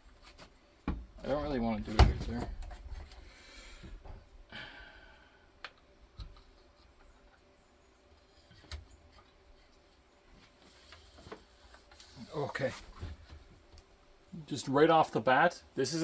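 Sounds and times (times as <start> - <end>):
person breathing out: 4.5 - 5.5.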